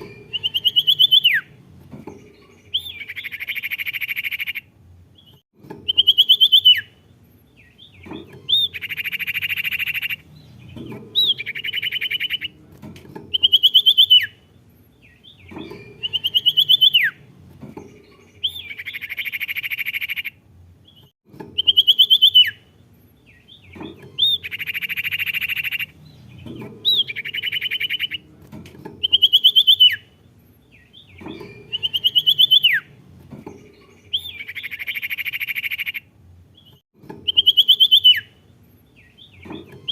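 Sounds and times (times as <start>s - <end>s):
bird whistled notes: 0.3s - 1.5s, 21.6s - 22.6s, 29.0s - 30.0s, 31.4s - 32.9s, 37.3s - 38.3s.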